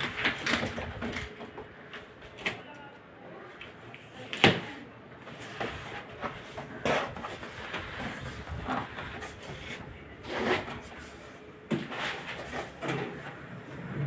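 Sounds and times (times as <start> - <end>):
packaging scraping and rustling: 0.0 - 2.6, 5.2 - 13.9.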